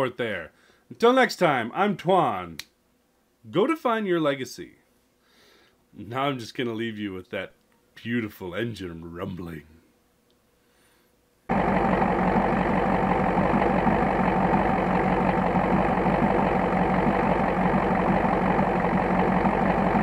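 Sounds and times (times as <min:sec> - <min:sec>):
diesel engine rumbling: 0:11.5 - 0:20.0.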